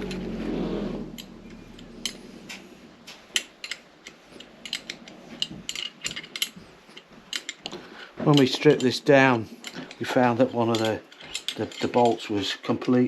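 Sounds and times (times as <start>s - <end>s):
metal parts clinking: 1.1s - 13.0s.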